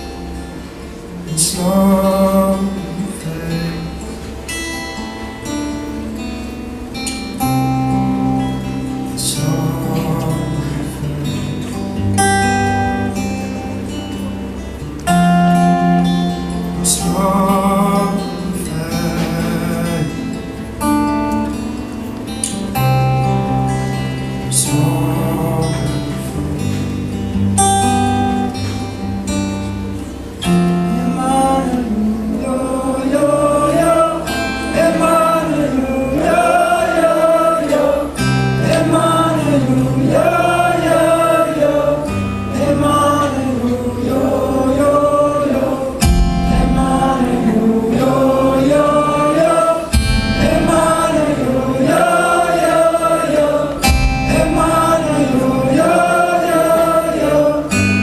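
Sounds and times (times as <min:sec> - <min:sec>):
wordless singing voices: 0:00.0 - 0:04.6, 0:07.6 - 0:14.0, 0:14.8 - 0:21.1, 0:22.4 - 0:27.6, 0:30.4 - 0:58.0
acoustic guitar chords: 0:00.0 - 0:58.0
deep thumps: 0:46.0 - 0:47.4, 0:49.9 - 0:51.1, 0:53.8 - 0:55.0.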